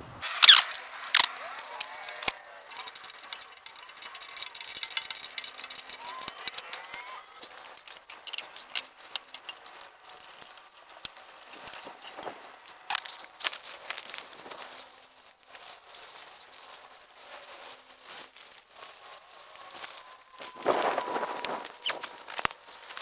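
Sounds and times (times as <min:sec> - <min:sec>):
bicycle parts clicking and rattling: 0:00.2 - 0:23.0
faint squeaks: 0:00.2 - 0:23.0.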